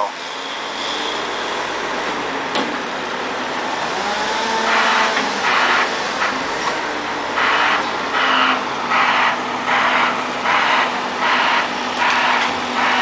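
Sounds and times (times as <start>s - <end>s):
engine running steadily: 0.0s - 13.0s
hissing reversing alarm: 4.2s - 6.0s, 7.3s - 13.0s.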